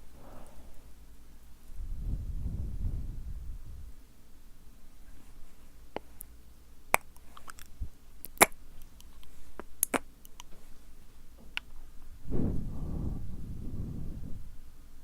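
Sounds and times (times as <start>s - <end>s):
wet mouth clicks and pops: 6.9s - 10.5s.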